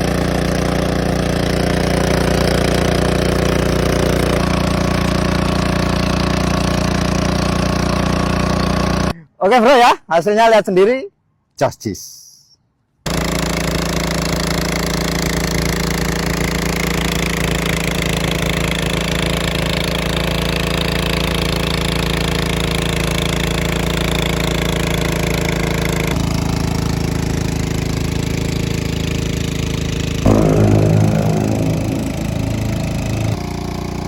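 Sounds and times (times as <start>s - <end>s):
water pump engine running: 0.0s - 9.0s.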